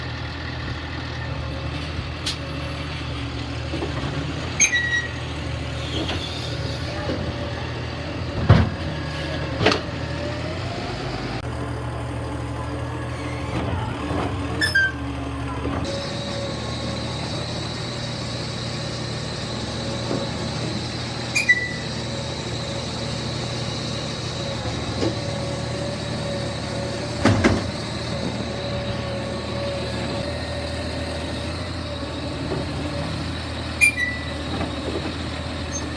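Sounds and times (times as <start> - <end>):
truck engine running: 0.0 - 35.9.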